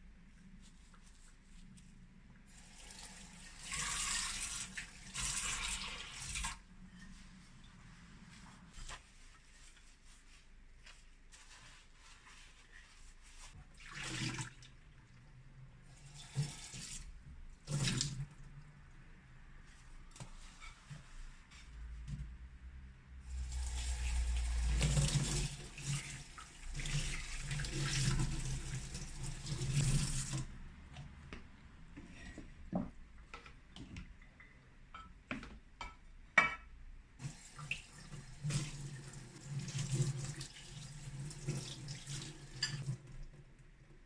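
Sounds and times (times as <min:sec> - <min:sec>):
water running from a tap: 0:02.6 - 0:06.6, 0:23.5 - 0:30.5, 0:37.2 - 0:43.2.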